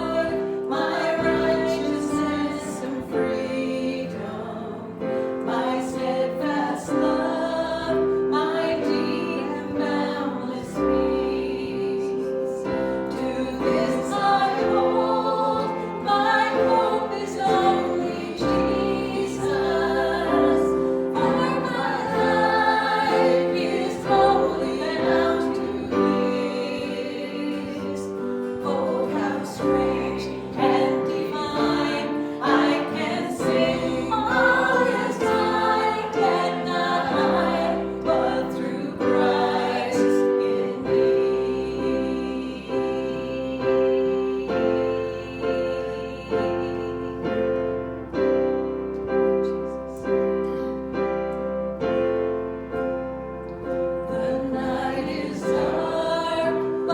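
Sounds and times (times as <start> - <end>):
piano accompaniment: 0.0 - 56.9
voices singing a hymn: 0.0 - 56.9.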